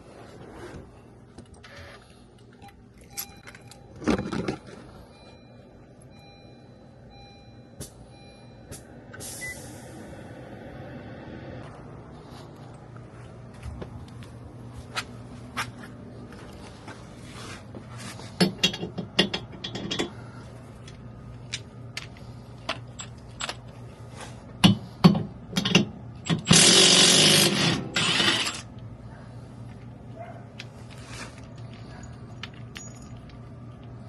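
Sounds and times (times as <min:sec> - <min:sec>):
metal tools clanking and ratcheting: 0:18.4 - 0:20.2, 0:22.7 - 0:23.7, 0:31.4 - 0:33.4.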